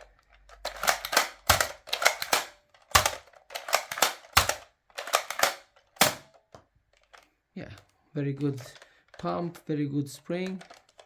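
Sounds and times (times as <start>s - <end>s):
toy blaster priming clacks: 0.5s - 6.4s, 10.4s - 11.0s.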